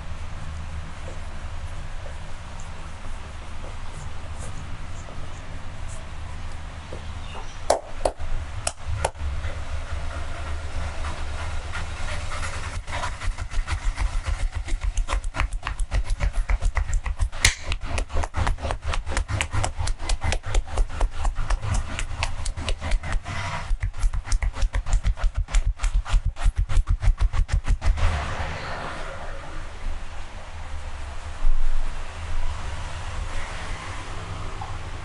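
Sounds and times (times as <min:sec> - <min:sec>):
hands slapping in massage: 0:07.7 - 0:09.2, 0:13.5 - 0:28.0
hands rubbing: 0:10.6 - 0:28.0.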